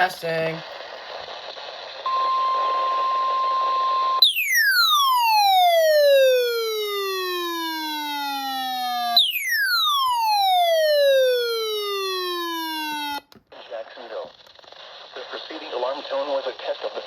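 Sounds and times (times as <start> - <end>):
radio static: 0.0 - 4.2, 13.4 - 17.0
falling electronic tones: 2.0 - 13.2
steady alarm tone: 2.0 - 13.2.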